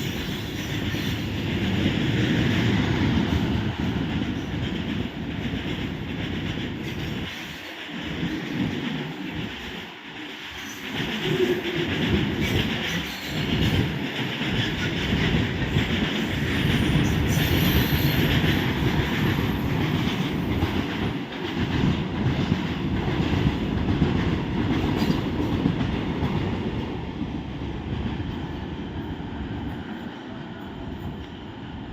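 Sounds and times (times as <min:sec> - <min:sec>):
freight train rumbling past: 0:00.0 - 0:31.9.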